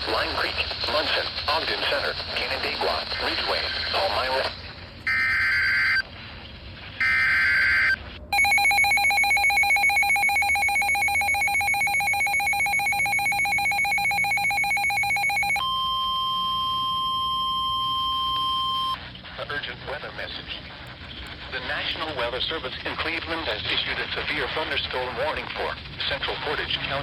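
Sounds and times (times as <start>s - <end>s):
screeching digital data bursts: 7.2s - 15.6s
harsh buzzing alert tone: 8.3s - 15.6s.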